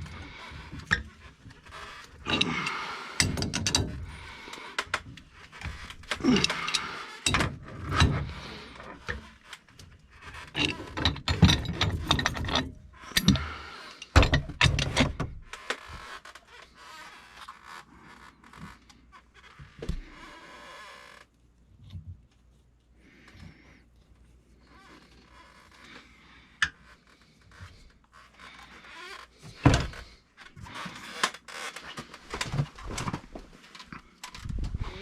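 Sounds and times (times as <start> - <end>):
metal tools clanking and scraping: 1.8 - 4.2, 6.2 - 9.4, 10.4 - 15.2.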